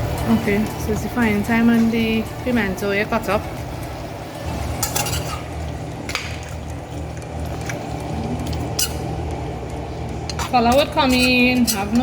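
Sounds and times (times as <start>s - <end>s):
spoon stirring a pot: 4.6s - 5.7s, 6.3s - 12.0s.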